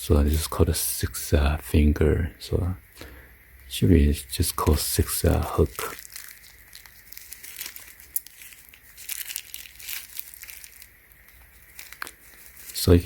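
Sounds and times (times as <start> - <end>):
plastic packaging rustling: 4.5 - 13.0.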